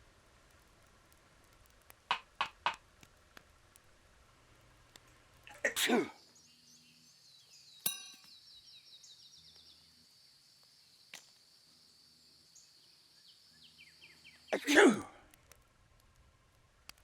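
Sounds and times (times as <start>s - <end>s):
person sneezing: 5.5s - 6.2s, 14.6s - 15.2s
sharp click with metallic ring: 7.8s - 8.4s.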